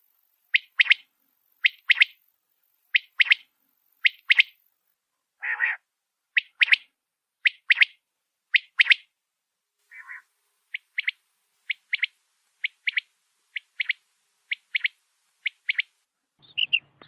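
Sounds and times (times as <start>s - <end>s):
rough low quail call: 5.4s - 6.9s, 9.9s - 17.0s
quail three-note call: 9.9s - 10.3s.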